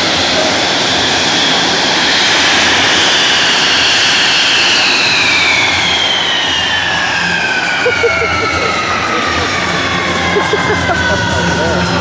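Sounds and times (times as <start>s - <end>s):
jet engine roar with whine: 0.0s - 12.0s.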